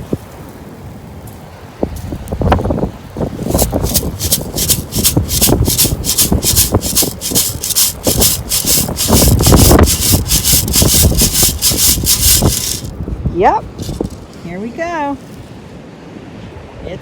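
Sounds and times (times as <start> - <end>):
sand hissing through scoop: 3.4 - 12.9.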